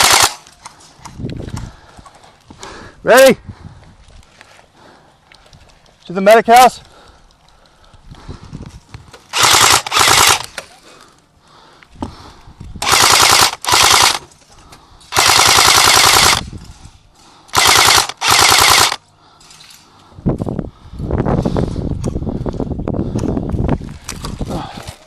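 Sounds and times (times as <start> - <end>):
airsoft gun firing bursts: 0.0 - 0.5, 9.3 - 10.6, 12.8 - 14.3, 15.1 - 16.5, 17.5 - 19.0.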